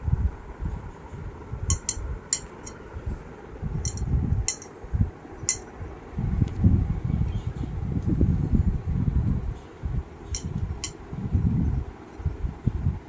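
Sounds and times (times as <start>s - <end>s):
dish clinking: 1.7s - 2.8s, 3.9s - 4.7s.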